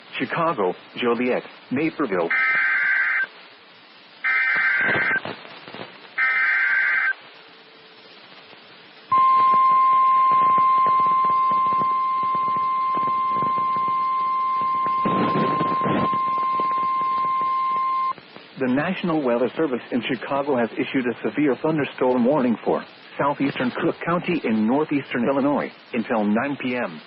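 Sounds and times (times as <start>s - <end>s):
radio hiss and static: 0.0s - 27.0s
screeching digital data bursts: 2.2s - 3.3s, 4.2s - 5.4s, 6.2s - 7.2s, 9.2s - 18.2s
steady high alarm tone: 6.2s - 7.2s, 9.1s - 18.1s.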